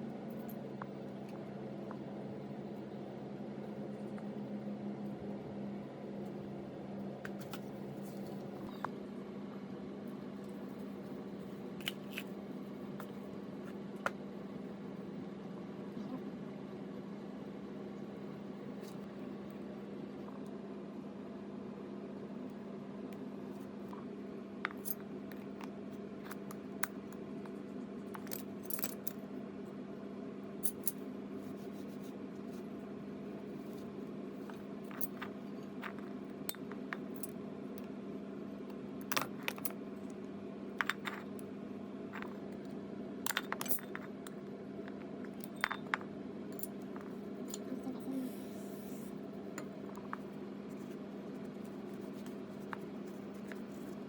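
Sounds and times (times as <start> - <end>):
steady low hum: 0.0 - 54.0
small metal parts clinking: 43.3 - 44.1.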